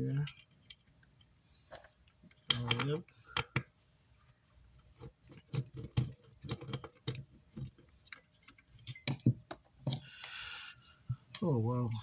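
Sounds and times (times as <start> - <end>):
tools clicking and knocking: 0.2 - 3.8, 4.9 - 10.1.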